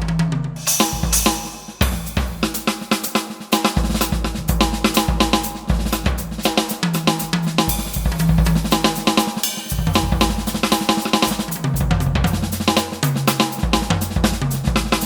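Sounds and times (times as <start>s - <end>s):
electronic drum kit groove: 0.6s - 15.0s
pitched bass line: 9.7s - 12.6s.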